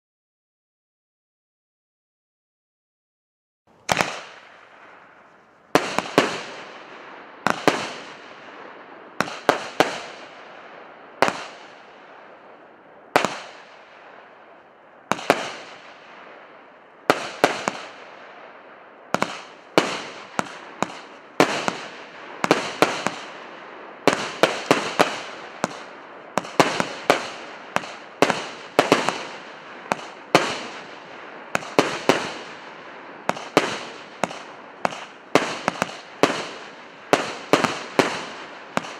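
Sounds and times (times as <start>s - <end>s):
firework battery shots: 3.8s - 8.5s, 9.2s - 10.4s, 13.2s - 14.4s, 15.1s - 16.4s, 17.0s - 18.2s, 19.1s - 38.9s.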